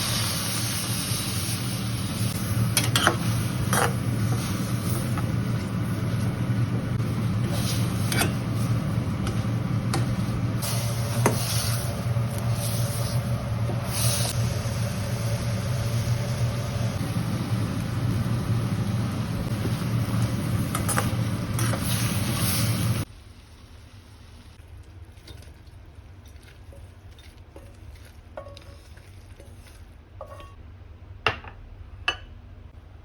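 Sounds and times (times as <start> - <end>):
food sizzling in a wok: 0.0 - 24.6
range hood fan hum: 0.0 - 33.0.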